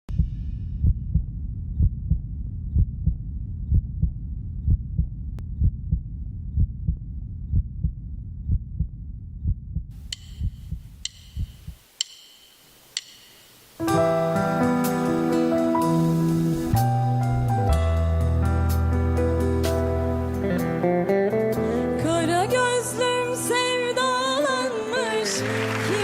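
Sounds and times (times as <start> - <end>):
heartbeat thumps: 0.1 - 11.8
sharp clicks: 10.1 - 13.5.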